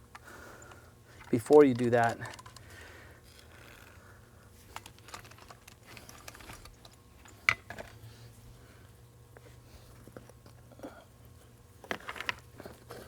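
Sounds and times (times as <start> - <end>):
low steady hum: 0.0 - 13.0
stones clicking against rock: 1.2 - 2.7.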